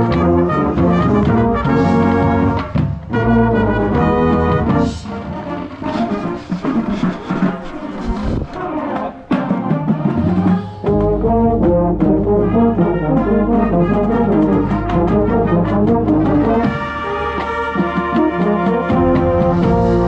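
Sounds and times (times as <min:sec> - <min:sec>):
drum hits: 0:00.0 - 0:03.4
marching band brass: 0:00.0 - 0:20.0.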